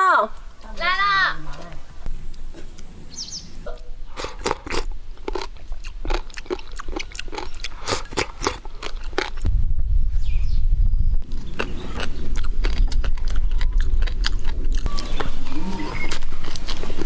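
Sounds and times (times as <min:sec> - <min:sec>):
crunchy food being chewed: 0:01.4 - 0:09.5, 0:11.2 - 0:17.0
loud low rumble: 0:08.9 - 0:16.4.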